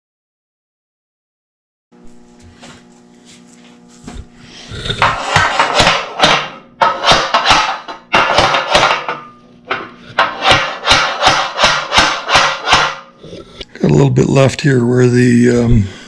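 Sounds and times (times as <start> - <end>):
faint machine hum: 2.0 - 16.0
hand tool scraping steel tubing: 4.7 - 8.9, 9.7 - 13.1.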